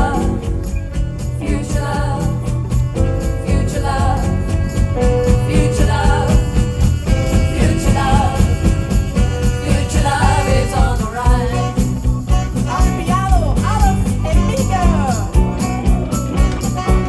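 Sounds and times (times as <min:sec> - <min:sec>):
person singing: 0:00.0 - 0:00.7
drums and bass beat: 0:00.0 - 0:17.0.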